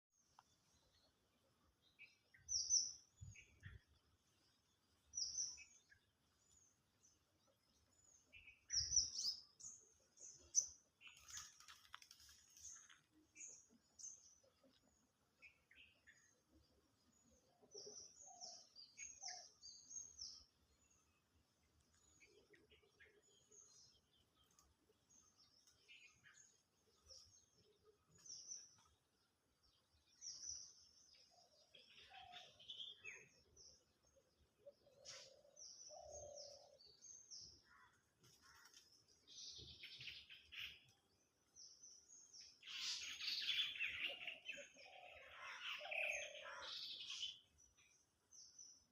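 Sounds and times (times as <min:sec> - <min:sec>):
songbirds chirping: 0:00.0 - 0:48.9
lower bird calls: 0:42.5 - 0:47.5.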